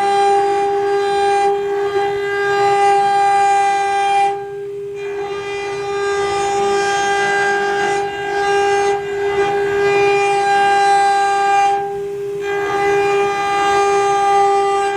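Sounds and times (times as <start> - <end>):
spindle high-pitched whine: 0.0 - 14.9.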